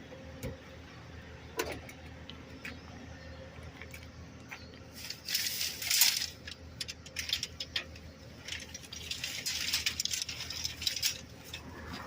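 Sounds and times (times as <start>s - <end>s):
rustling of items: 4.8s - 12.0s.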